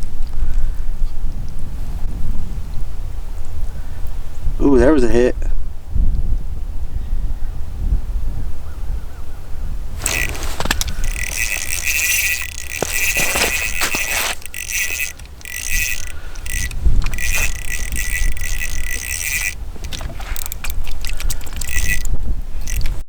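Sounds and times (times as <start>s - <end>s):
fishing reel clicking: 10.0s - 23.0s.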